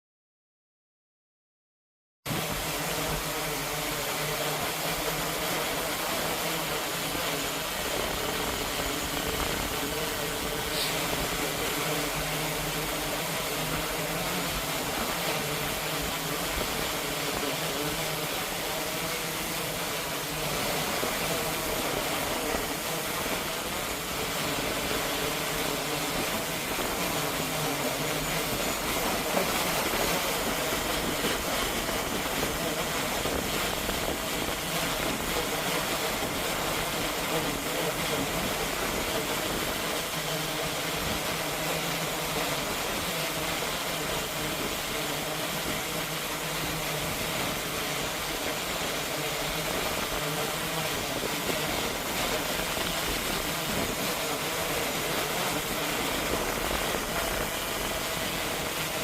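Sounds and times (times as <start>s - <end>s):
drone propellers humming: 2.3s - 59.0s
strong gusty wind on microphone: 2.3s - 59.0s.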